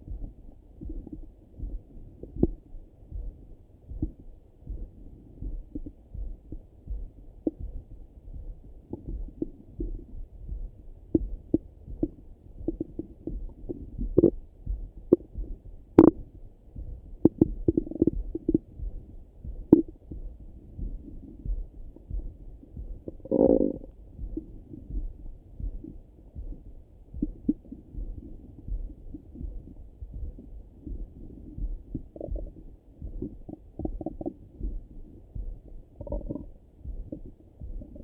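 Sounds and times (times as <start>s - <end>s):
low pulse: 0.0s - 38.0s
bowel gurgles and clicks: 23.2s - 23.9s.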